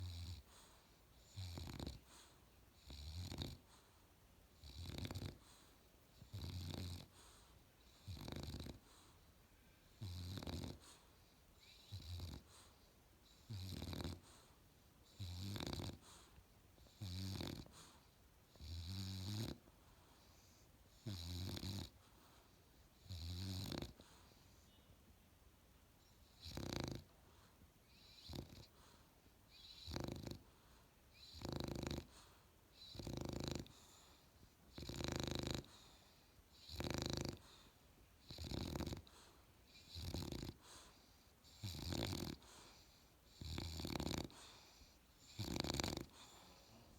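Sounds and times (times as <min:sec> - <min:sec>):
puppy snoring: 0:00.0 - 0:04.0, 0:04.6 - 0:09.2, 0:09.9 - 0:24.7, 0:26.0 - 0:46.9.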